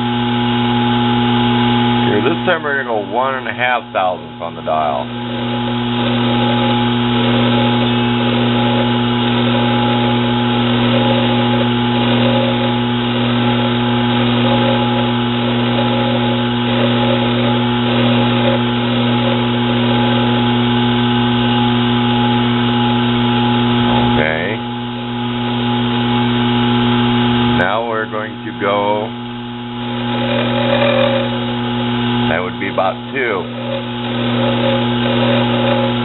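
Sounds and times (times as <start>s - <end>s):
metal lathe motor hum: 0.0s - 36.0s
tool bit cutting steel: 3.6s - 22.2s, 29.7s - 36.0s.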